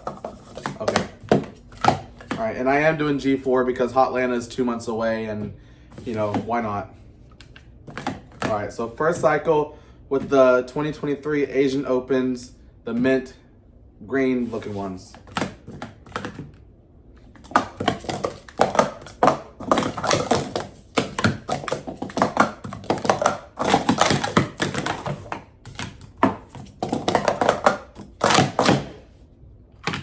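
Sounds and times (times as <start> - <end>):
plastic cups clacking: 0.0 - 2.6, 5.9 - 6.6, 7.9 - 9.3, 15.1 - 16.5, 17.4 - 29.0.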